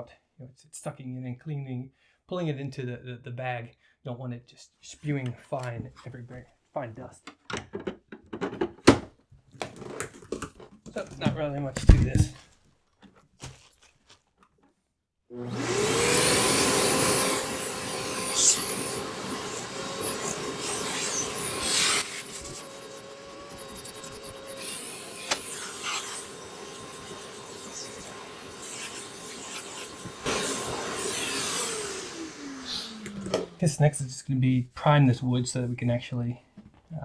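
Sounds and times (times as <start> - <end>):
dust extractor motor whining: 15.3 - 33.9.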